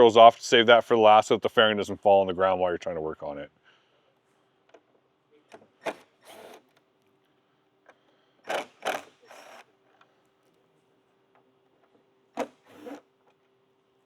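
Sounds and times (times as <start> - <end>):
cordless power driver running: 5.6 - 6.8, 8.4 - 10.2, 12.3 - 13.4.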